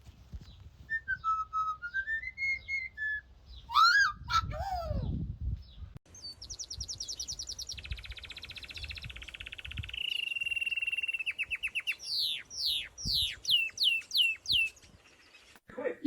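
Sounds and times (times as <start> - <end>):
bird whistling downward: 0.9 - 4.4, 9.8 - 14.8
bird trilling: 6.6 - 14.8.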